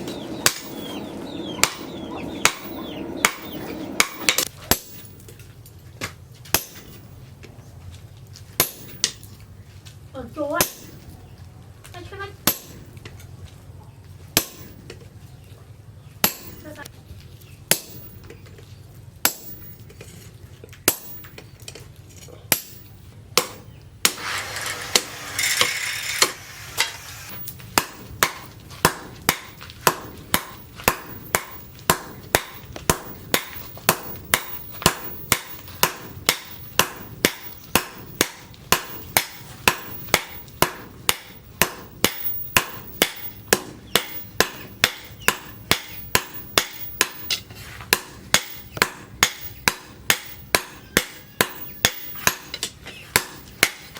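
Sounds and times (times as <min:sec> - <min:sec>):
hammer striking steel on anvil: 0:00.0 - 0:05.1, 0:06.5 - 0:07.0, 0:10.6 - 0:11.0, 0:12.4 - 0:12.9, 0:14.4 - 0:14.9, 0:16.2 - 0:16.8, 0:17.7 - 0:18.2, 0:22.5 - 0:53.9.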